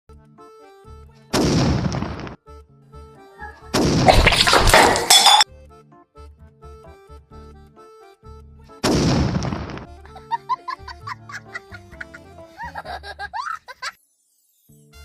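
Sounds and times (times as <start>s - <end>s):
background music: 0.1s - 13.8s, 14.6s - 15.0s
firecracker blasts: 1.4s - 2.4s, 8.9s - 9.9s.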